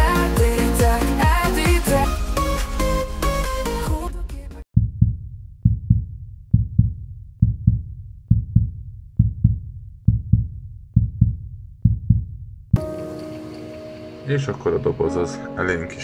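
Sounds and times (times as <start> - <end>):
heartbeat thumps: 4.7 - 12.8.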